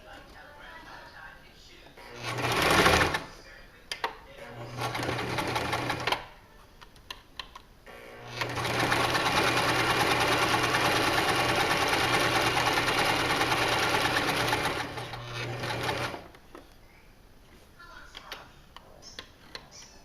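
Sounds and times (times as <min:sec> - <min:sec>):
sewing machine stitching: 0:02.1 - 0:03.3, 0:04.6 - 0:06.2, 0:07.9 - 0:16.3.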